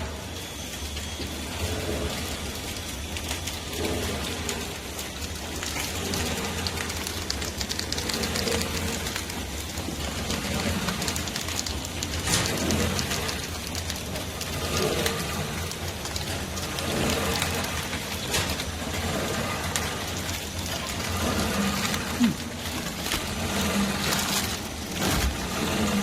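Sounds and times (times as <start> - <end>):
machine clicking and rattling: 0.0 - 26.0
machine humming: 0.0 - 26.0.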